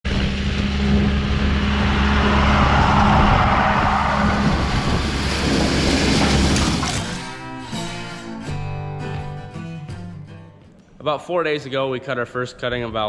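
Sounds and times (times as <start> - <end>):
vehicle engine humming: 0.1 - 7.7
rushing noise: 0.1 - 7.8.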